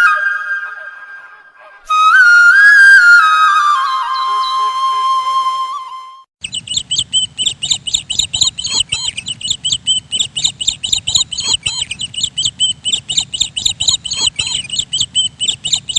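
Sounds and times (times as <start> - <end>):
small birds chirping: 6.4 - 15.9.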